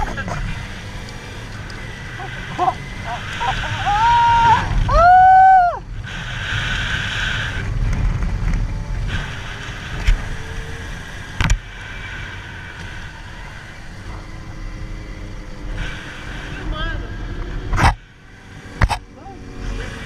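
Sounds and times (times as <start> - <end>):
motorcycle riding rumble: 0.0 - 20.0.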